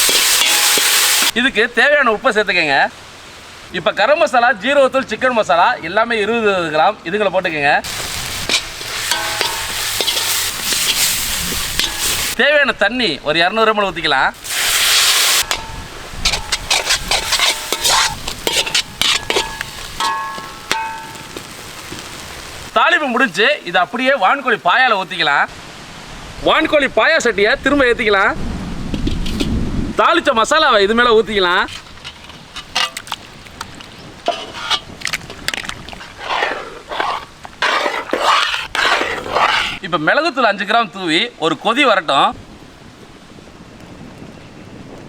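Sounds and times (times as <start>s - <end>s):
ladle scraping a pan: 0.0s - 1.3s, 7.8s - 12.4s, 14.4s - 22.2s, 29.0s - 29.6s, 31.5s - 39.8s
light sizzle: 0.0s - 1.5s, 7.8s - 12.9s, 13.7s - 25.8s, 28.8s - 39.8s
metal pan clinks and knocks: 9.1s - 10.4s, 11.7s - 12.4s, 15.4s - 21.4s, 32.0s - 33.2s
liquid splashing and sloshing: 31.6s - 39.8s.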